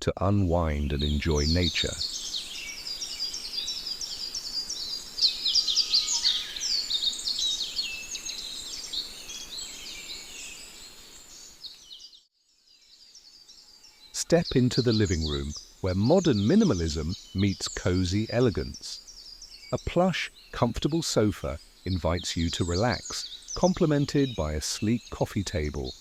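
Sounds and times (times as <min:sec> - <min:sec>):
many birds chirping: 0:00.5 - 0:26.0.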